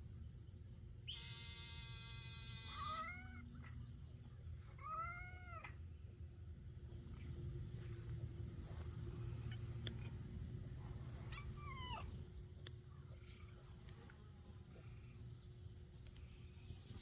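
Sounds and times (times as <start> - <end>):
long drawn-out call: 1.1 - 3.7
cat meowing: 2.6 - 3.7, 4.8 - 5.8.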